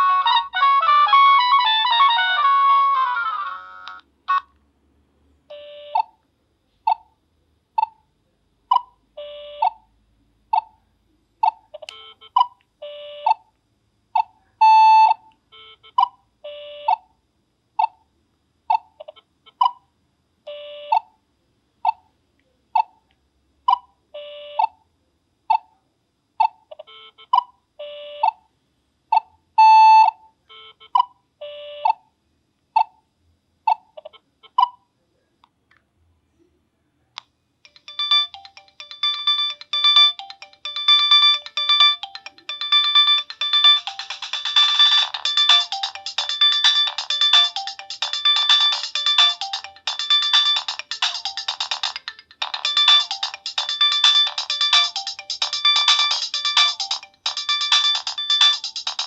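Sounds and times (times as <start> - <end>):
busy layered ringtone: 0.0 - 4.4, 37.7 - 59.0
electronic beep ringtone: 14.6 - 15.7, 29.6 - 30.2, 37.7 - 59.0.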